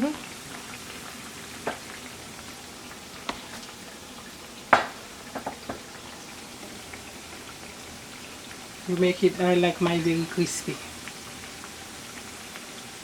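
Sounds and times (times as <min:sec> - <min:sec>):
plantain sizzling in frying oil: 0:00.0 - 0:13.0
clicks and knocks in pan: 0:04.7 - 0:05.9.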